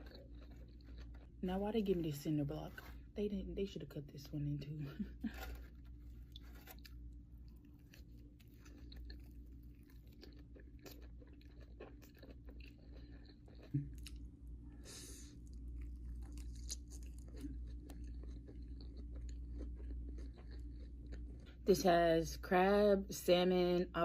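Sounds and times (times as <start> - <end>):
close chewing with clicks: 0.0 - 1.4, 5.4 - 14.3, 15.4 - 21.6.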